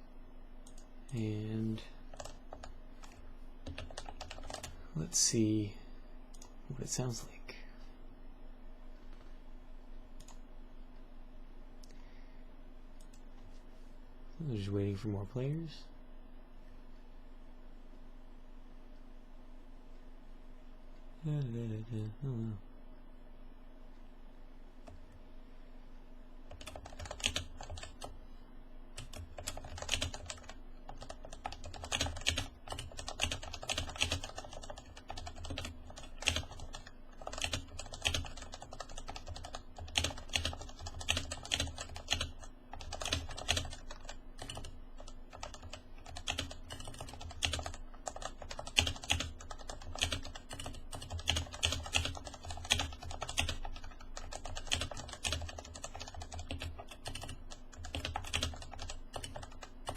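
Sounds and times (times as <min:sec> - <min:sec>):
fast keyboard typing: 0:02.1 - 0:04.8, 0:26.5 - 0:28.2, 0:29.0 - 0:59.9.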